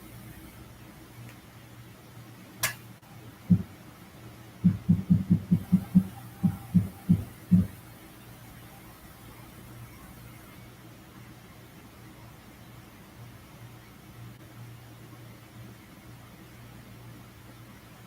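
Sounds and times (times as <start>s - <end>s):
steady low hum: 0.0s - 18.0s
sharp click: 2.6s - 2.8s
knocking on a window: 3.5s - 3.7s, 4.6s - 7.7s.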